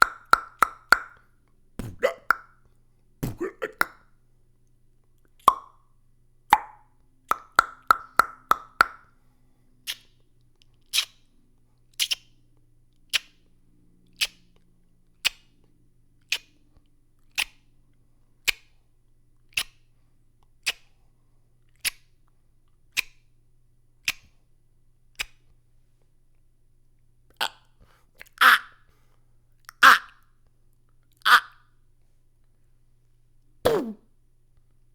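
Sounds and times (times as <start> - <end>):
beatbox mouth clicks: 1.8 - 2.5, 3.2 - 4.0, 12.0 - 12.2, 19.5 - 19.8, 33.7 - 34.0.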